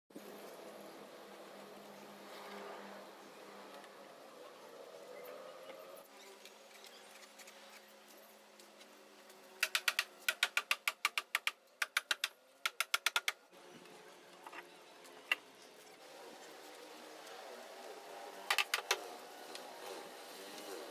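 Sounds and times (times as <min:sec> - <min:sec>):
rapid sharp clicks: 0:09.6 - 0:13.4.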